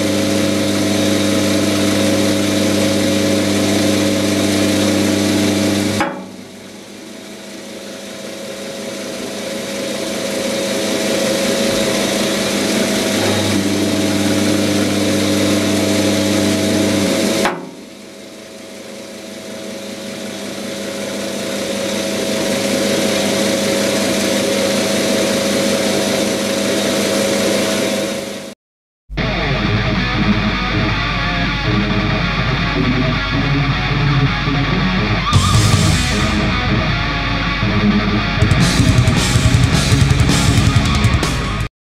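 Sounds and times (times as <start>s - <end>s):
lathe motor and gear hum: 9.4s - 17.9s.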